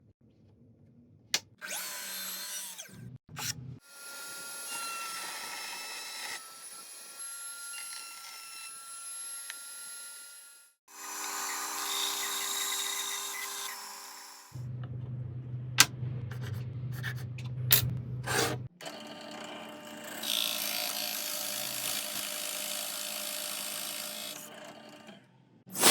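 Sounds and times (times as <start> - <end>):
power tools cutting wood: 1.6 - 14.6, 18.3 - 25.9.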